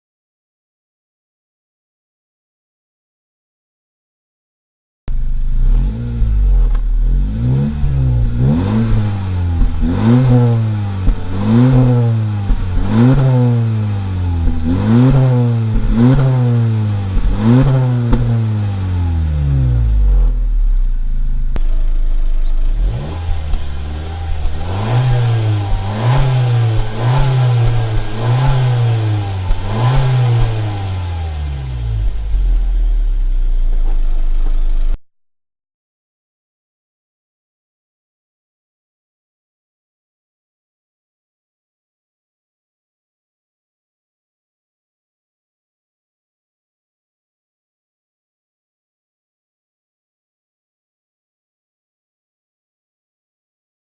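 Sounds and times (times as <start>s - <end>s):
car engine revving: 5.1s - 35.0s.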